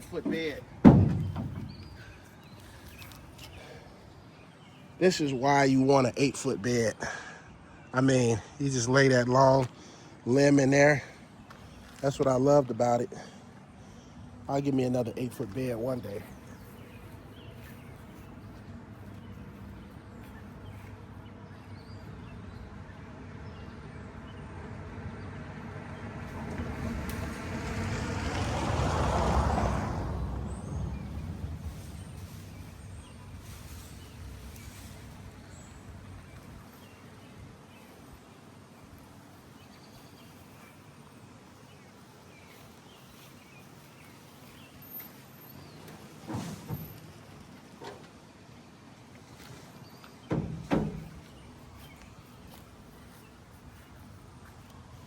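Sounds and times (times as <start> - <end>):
vehicle passing by: 16.0 - 37.9.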